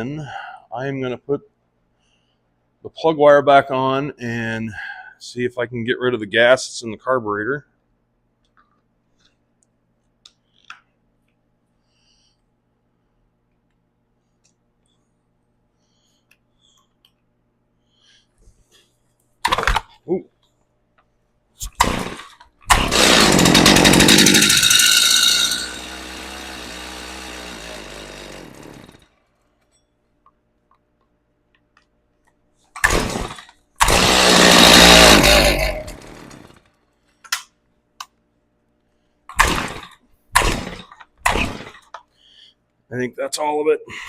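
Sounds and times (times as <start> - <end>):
chainsaw engine short bursts: 21.7 - 29.1, 32.8 - 36.7, 39.4 - 41.8
chainsaw starting and dying: 21.8 - 29.2, 32.8 - 36.7, 39.4 - 41.9.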